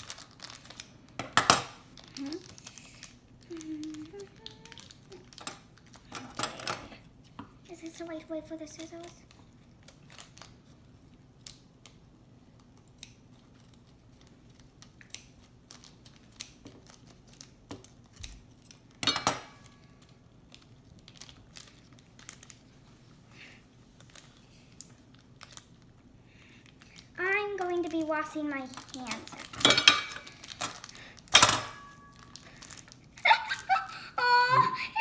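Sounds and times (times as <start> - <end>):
scissors cutting plastic bag: 0.0 - 6.3, 12.8 - 18.9, 27.5 - 33.7
plastic crinkle or rip: 0.0 - 7.0, 9.0 - 19.0, 19.6 - 33.7.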